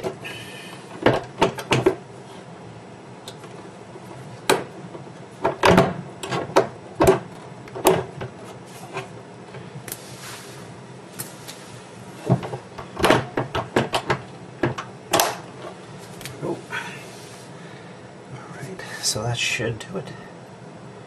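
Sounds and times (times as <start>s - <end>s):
cabinet hinge clicks and knocks: 1.0s - 2.0s, 5.4s - 8.3s, 12.3s - 15.4s.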